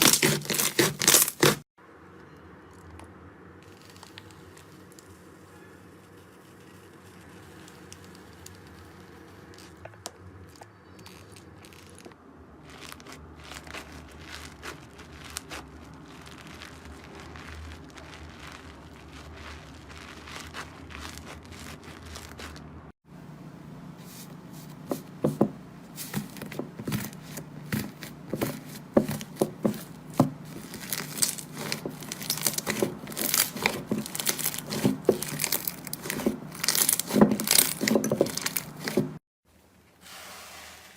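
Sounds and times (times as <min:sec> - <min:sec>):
slime crackling: 0:00.0 - 0:01.7, 0:03.6 - 0:05.3, 0:06.6 - 0:22.8, 0:26.0 - 0:39.2.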